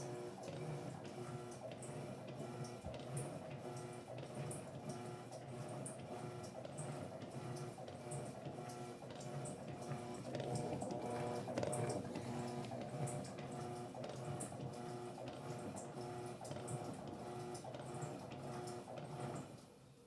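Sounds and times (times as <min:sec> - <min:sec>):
washing machine motor hum: 0:07.2 - 0:19.6.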